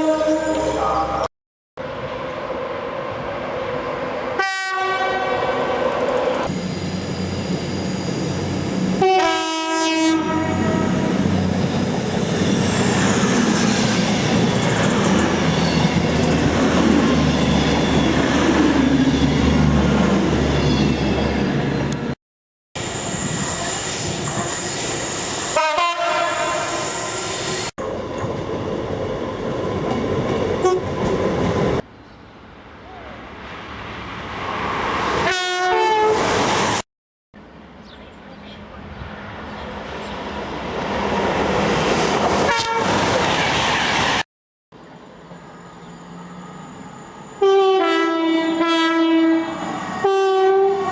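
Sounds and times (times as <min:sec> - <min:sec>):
two-tone train horn blasts: 0:00.0 - 0:01.3, 0:04.4 - 0:05.6, 0:09.0 - 0:11.1, 0:25.5 - 0:26.8, 0:35.2 - 0:36.2, 0:42.5 - 0:43.0, 0:47.4 - 0:50.9
trains rumbling past: 0:00.6 - 0:22.2, 0:22.8 - 0:36.8, 0:37.4 - 0:50.9.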